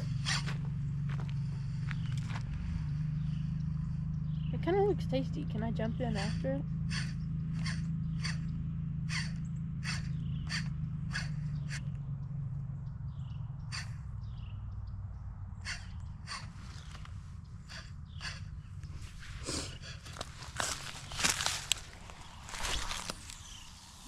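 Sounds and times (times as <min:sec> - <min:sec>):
footsteps crunching on rough ground: 0:00.0 - 0:02.8, 0:18.9 - 0:24.0
low steady rumble: 0:00.0 - 0:24.0.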